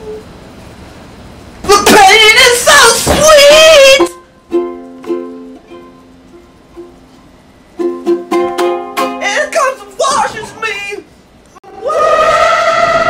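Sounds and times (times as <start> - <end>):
ukulele picked notes: 4.1 - 7.0, 7.8 - 9.2
wavering wordless voice: 9.2 - 11.1.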